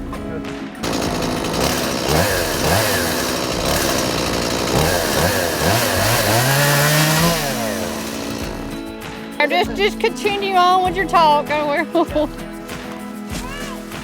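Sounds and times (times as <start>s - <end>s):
chainsaw engine revving: 0.8s - 9.0s.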